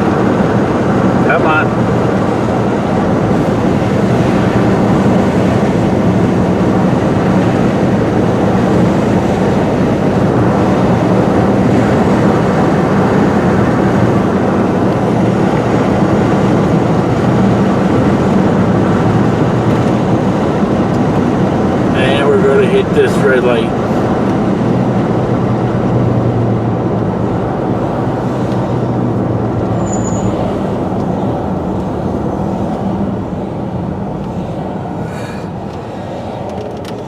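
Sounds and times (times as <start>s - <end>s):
car road and engine noise: 0.0s - 37.0s.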